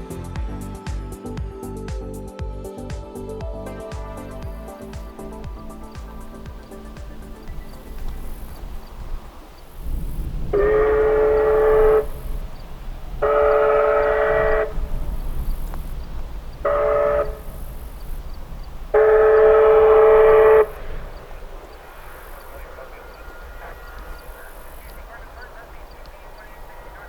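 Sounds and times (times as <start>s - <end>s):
steam locomotive whistle blasts: 10.6s - 12.2s, 13.2s - 14.9s, 16.7s - 17.7s, 19.0s - 20.8s.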